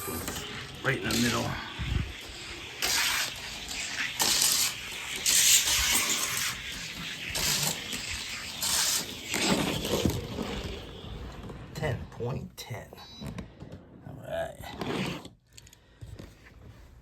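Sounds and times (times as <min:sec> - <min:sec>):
toy car wheels rushing on track: 0:00.0 - 0:11.6.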